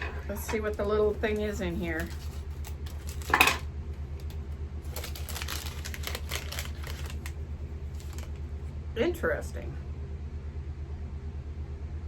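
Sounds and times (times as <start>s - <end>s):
plastic packaging clacks and rustles: 0.0s - 8.5s
steady low hum: 0.0s - 12.0s.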